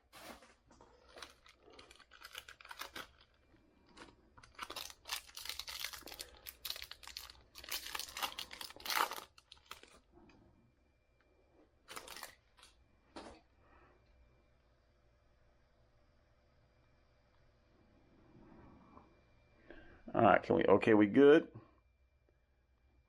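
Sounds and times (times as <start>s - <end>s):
card pack wrappers crinkling: 0.9s - 10.0s, 11.9s - 12.7s.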